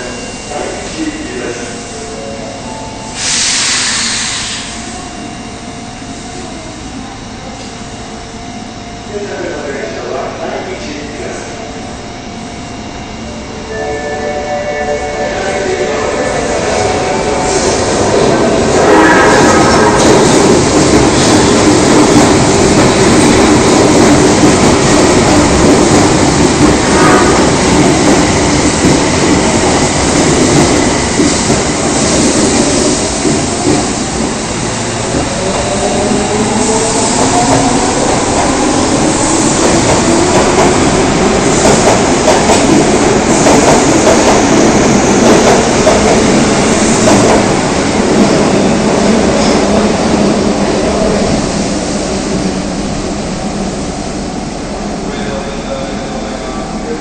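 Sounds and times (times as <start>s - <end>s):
clattering train wheels: 35.1s - 48.4s.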